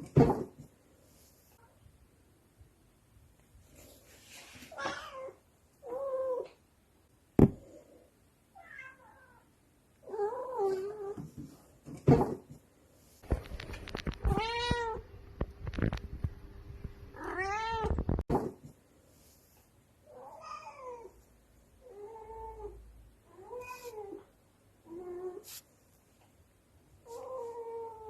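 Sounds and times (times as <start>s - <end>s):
sharp knock: 7.4s - 7.6s
cat meowing: 8.6s - 9.4s, 14.2s - 15.0s, 17.2s - 18.0s.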